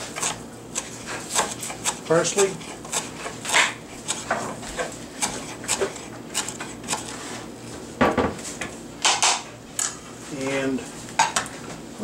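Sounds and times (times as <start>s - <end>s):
knife chopping on cutting board: 0.2s - 7.1s.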